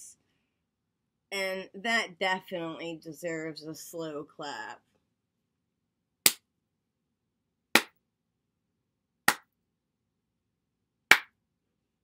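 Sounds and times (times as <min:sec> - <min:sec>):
slow hand claps: 0:11.1 - 0:11.3.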